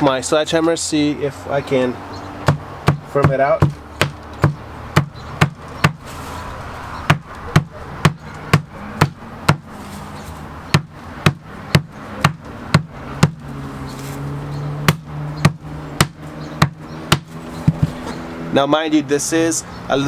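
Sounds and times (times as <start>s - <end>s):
sledgehammer striking paper: 2.5s - 14.2s, 14.9s - 18.2s.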